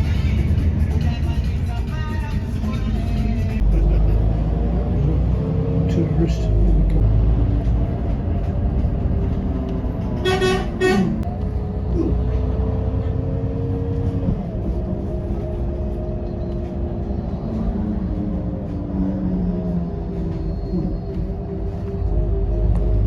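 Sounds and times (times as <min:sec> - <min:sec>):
vehicle running rumble: 0:00.0 - 0:23.0
vehicle horn toots: 0:10.2 - 0:11.2.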